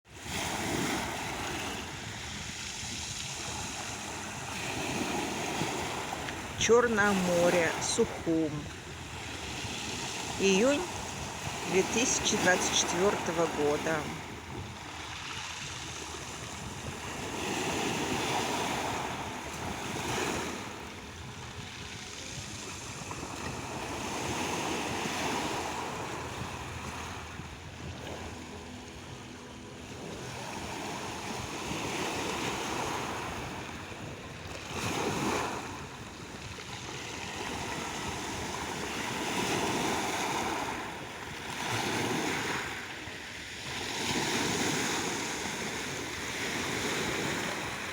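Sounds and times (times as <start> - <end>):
sea waves washing onto shore: 0.1 - 47.9.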